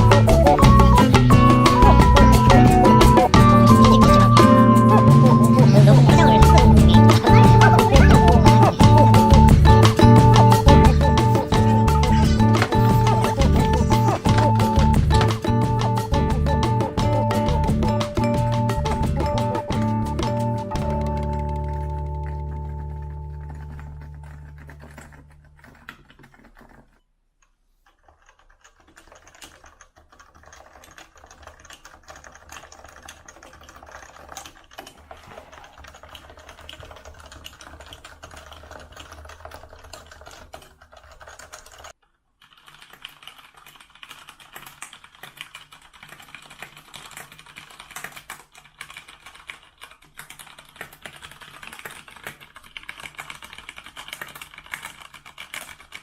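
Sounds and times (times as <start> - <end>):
keyboard typing: 0.0 - 27.0, 27.8 - 56.0.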